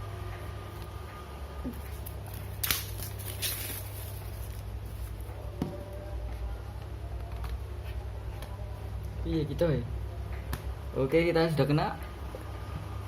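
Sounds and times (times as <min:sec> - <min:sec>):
steady low hum: 0:00.0 - 0:13.0
packaging crinkle: 0:01.7 - 0:05.2.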